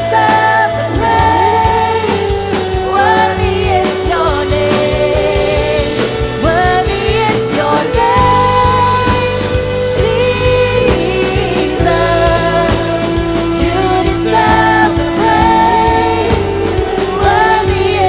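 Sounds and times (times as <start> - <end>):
voices singing long notes: 0.0 - 18.0
worship band playing slow song: 0.0 - 18.0.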